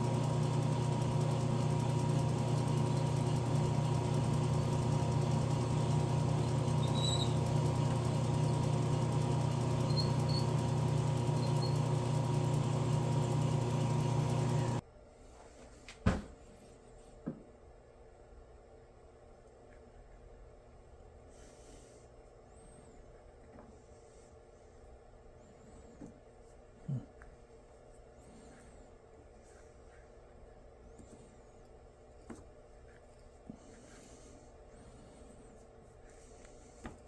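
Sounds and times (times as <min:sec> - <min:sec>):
machine motor humming: 0:00.0 - 0:14.8.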